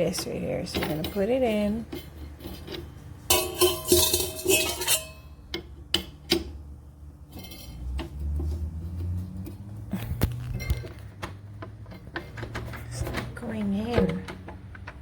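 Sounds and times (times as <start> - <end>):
metal attachment clattering: 0.3 - 6.6.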